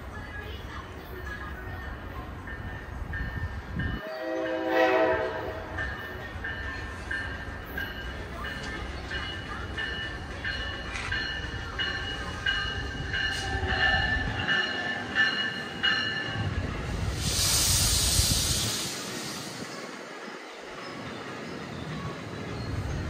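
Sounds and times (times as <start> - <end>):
train low rumble: 0.0 - 23.0
locomotive bell ringing: 1.3 - 16.8
air hiss: 16.8 - 20.0.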